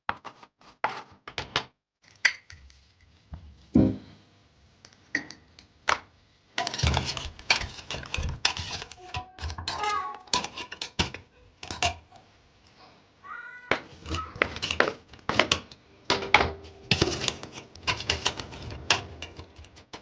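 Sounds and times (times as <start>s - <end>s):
clicks and knocks: 13.7s - 20.0s.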